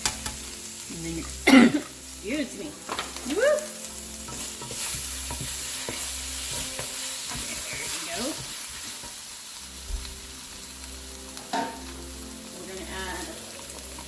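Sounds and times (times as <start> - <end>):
food sizzling in hot oil: 0.0 - 14.0
utensil scraping a pan: 4.1 - 9.2.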